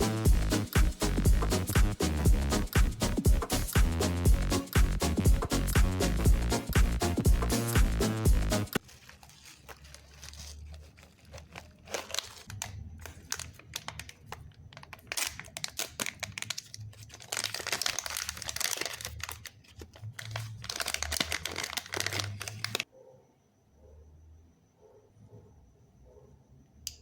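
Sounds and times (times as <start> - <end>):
plastic crinkling and rustling: 8.8 - 22.9.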